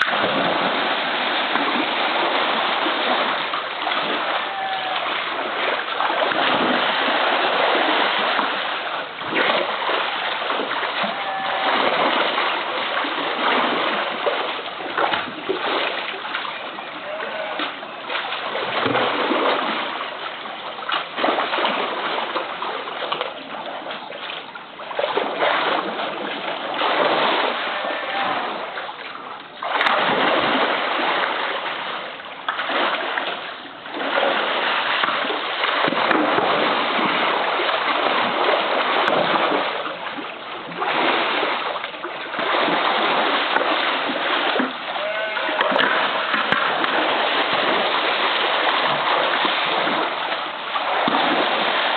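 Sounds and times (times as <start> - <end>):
water splashing and churning: 0.0 - 51.9.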